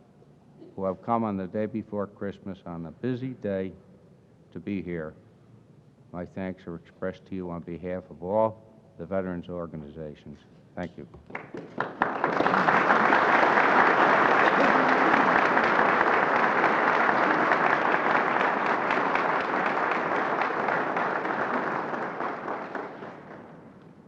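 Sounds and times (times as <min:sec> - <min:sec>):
audience applauding: 0:11.3 - 0:24.0.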